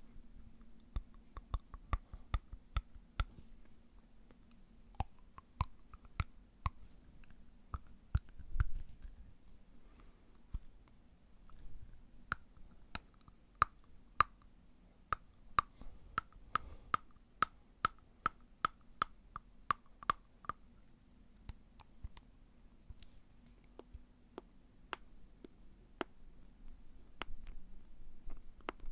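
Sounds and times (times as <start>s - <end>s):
teeth clicking on fingernails: 0.8s - 3.3s, 4.3s - 8.8s, 15.1s - 20.6s.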